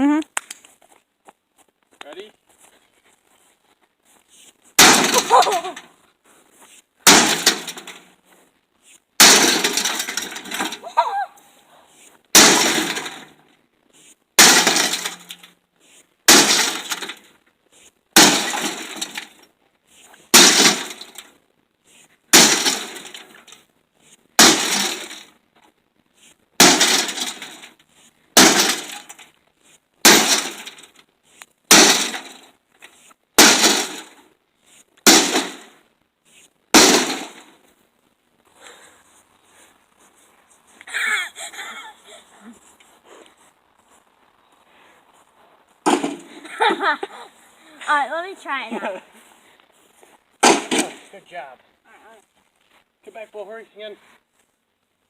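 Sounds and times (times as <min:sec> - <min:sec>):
sledgehammer smashing microwave: 0:04.8 - 0:05.6, 0:07.0 - 0:08.0, 0:09.2 - 0:10.8, 0:12.4 - 0:13.4, 0:14.4 - 0:15.5, 0:16.3 - 0:17.2, 0:18.2 - 0:19.4, 0:20.3 - 0:21.2, 0:22.3 - 0:23.4, 0:24.4 - 0:25.3, 0:26.6 - 0:27.8, 0:28.4 - 0:29.2, 0:30.0 - 0:30.9, 0:31.7 - 0:32.4, 0:33.4 - 0:34.2, 0:35.1 - 0:35.7, 0:36.8 - 0:37.5, 0:50.4 - 0:51.1
glass breaking: 0:04.8 - 0:05.8, 0:07.1 - 0:08.0, 0:09.2 - 0:10.8, 0:12.4 - 0:13.4, 0:14.4 - 0:15.5, 0:16.3 - 0:17.2, 0:18.2 - 0:19.4, 0:20.3 - 0:21.2, 0:22.3 - 0:23.6, 0:24.4 - 0:25.3, 0:26.6 - 0:27.8, 0:28.4 - 0:29.3, 0:30.0 - 0:31.0, 0:31.7 - 0:32.5, 0:33.4 - 0:34.2, 0:35.1 - 0:35.7, 0:36.8 - 0:37.6, 0:50.4 - 0:51.1
debris clattering: 0:04.8 - 0:05.9, 0:07.0 - 0:08.2, 0:09.2 - 0:11.0, 0:12.3 - 0:13.5, 0:14.4 - 0:15.6, 0:16.3 - 0:17.3, 0:18.2 - 0:19.4, 0:20.3 - 0:21.3, 0:22.3 - 0:23.6, 0:24.4 - 0:25.4, 0:26.6 - 0:27.8, 0:28.4 - 0:29.3, 0:30.0 - 0:31.0, 0:31.7 - 0:32.6, 0:33.4 - 0:34.3, 0:35.0 - 0:35.8, 0:36.7 - 0:37.6, 0:45.9 - 0:46.9, 0:50.4 - 0:51.2.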